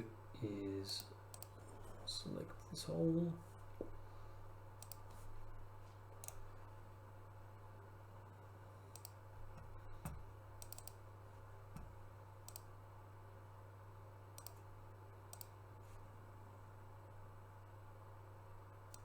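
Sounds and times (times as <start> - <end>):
faint low hum: 0.0 - 19.0
computer mouse clicking: 1.0 - 2.1, 4.8 - 5.2, 6.2 - 6.4, 8.9 - 11.0, 11.8 - 12.7, 14.4 - 14.6, 15.3 - 15.6.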